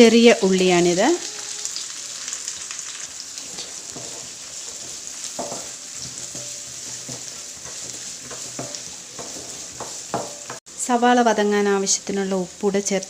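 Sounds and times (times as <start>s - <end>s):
food sizzling in oil: 0.0s - 13.0s
spatula scraping and tapping pan: 3.4s - 10.7s.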